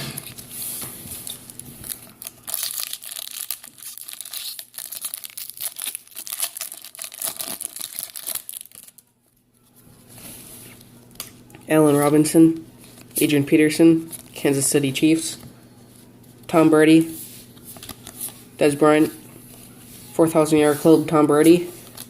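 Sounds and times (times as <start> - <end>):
wrapper tearing and crinkling: 1.2 - 9.0.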